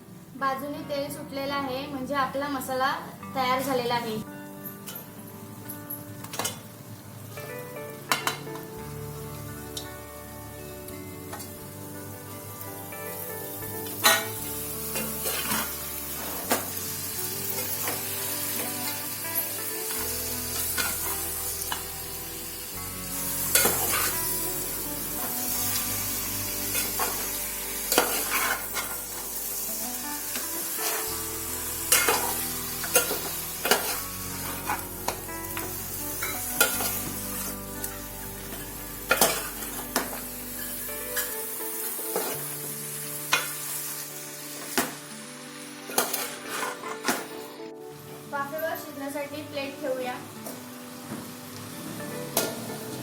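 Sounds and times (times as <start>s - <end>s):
food sizzling in a pot: 0.0s - 53.0s
spoon scraping a pot: 27.9s - 29.2s, 45.9s - 47.2s.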